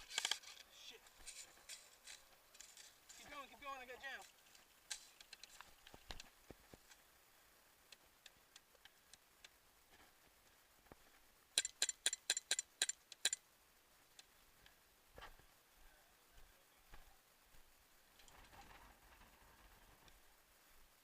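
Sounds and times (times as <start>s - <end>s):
faint clicks: 7.9s - 9.6s.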